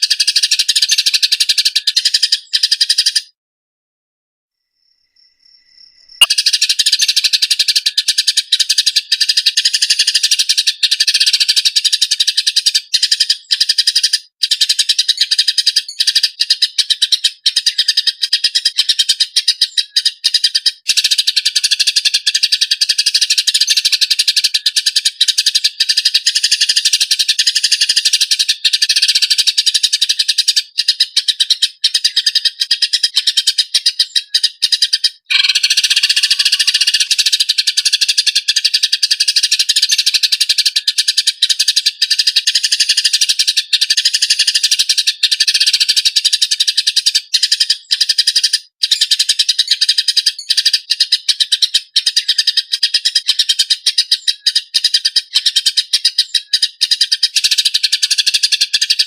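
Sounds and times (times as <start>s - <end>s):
sparrows chirping: 0.0s - 3.4s, 5.1s - 59.0s.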